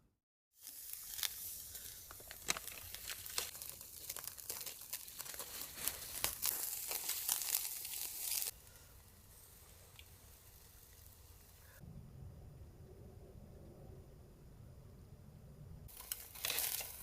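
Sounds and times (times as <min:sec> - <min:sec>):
dense crackling noise: 0:00.6 - 0:08.6, 0:15.8 - 0:17.0.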